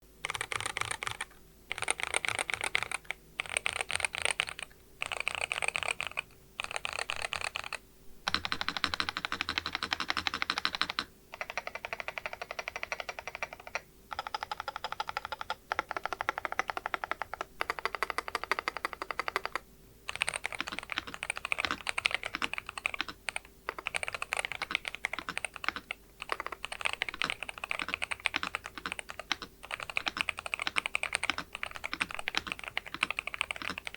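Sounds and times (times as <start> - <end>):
fast keyboard typing: 0.2 - 33.9.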